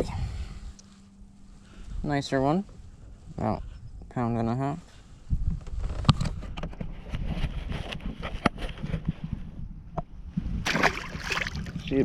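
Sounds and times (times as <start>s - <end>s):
wind rumble on microphone: 0.0s - 12.0s.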